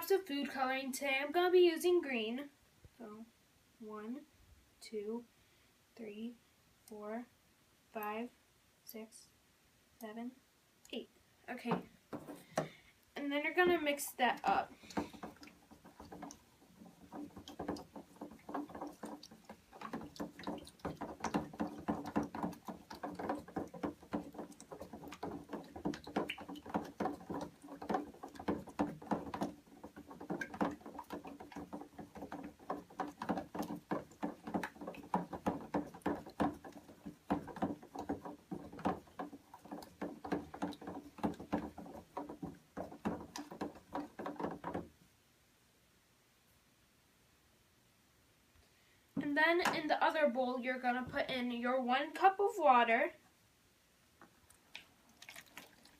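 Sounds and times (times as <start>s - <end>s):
plastic spoon stirring in a bowl: 11.5s - 12.8s, 13.4s - 44.9s.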